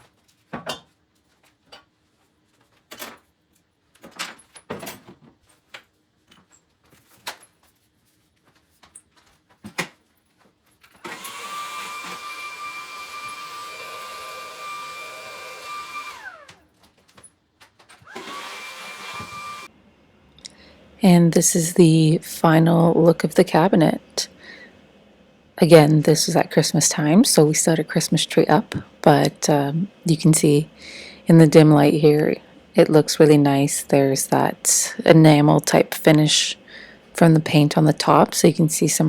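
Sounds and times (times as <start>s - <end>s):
vacuum cleaner whine: 11.0s - 16.6s, 18.0s - 19.8s, 20.5s - 38.4s.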